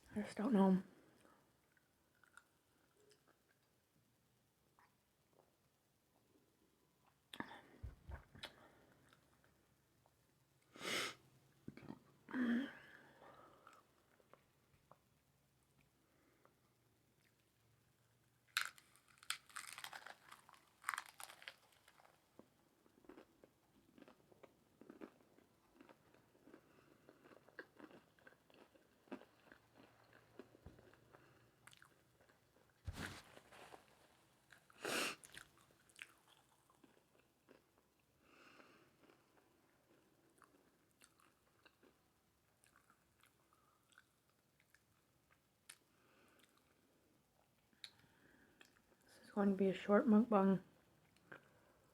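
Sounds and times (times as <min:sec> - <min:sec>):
chewing: 0:01.2 - 0:03.7, 0:18.5 - 0:22.2, 0:23.0 - 0:37.6, 0:39.0 - 0:46.8
crunchy taco bites: 0:18.4 - 0:46.8.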